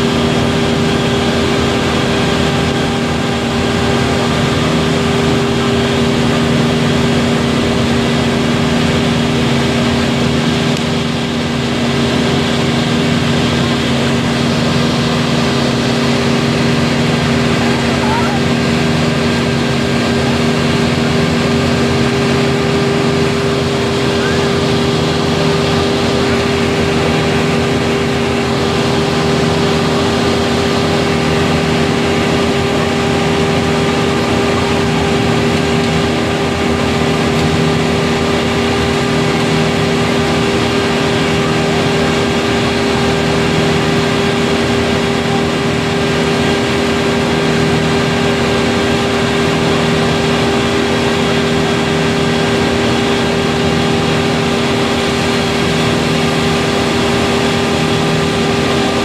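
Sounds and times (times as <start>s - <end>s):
heavy engine humming: 0.0s - 59.0s.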